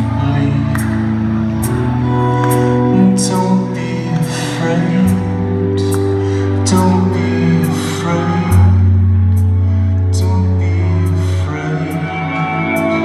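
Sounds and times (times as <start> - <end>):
band playing slow passage: 0.0 - 13.0
held bass notes: 0.0 - 13.0.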